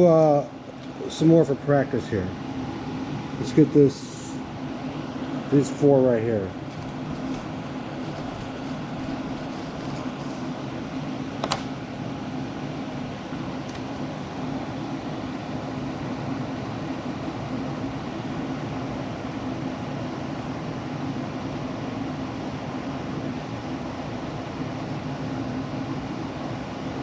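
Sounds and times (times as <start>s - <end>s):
extractor fan humming: 0.0s - 27.0s.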